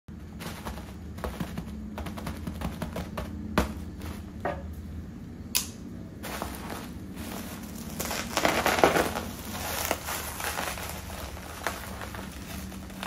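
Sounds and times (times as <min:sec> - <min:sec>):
faint low hum: 0:00.1 - 0:13.0
packaging rustling: 0:06.2 - 0:13.0.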